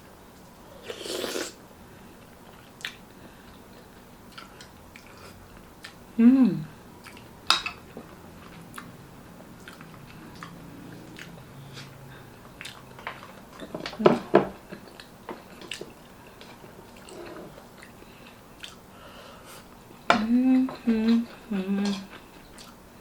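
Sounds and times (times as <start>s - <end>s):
person chewing food: 0.8s - 1.6s, 2.4s - 6.0s, 7.0s - 14.0s, 14.6s - 20.0s, 20.9s - 22.8s
wet mouth clicks and smacks: 2.8s - 3.0s, 18.6s - 18.8s.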